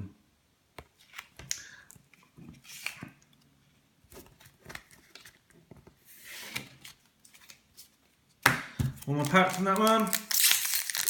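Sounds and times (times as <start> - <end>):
foil wrapper crinkling: 9.0 - 11.0.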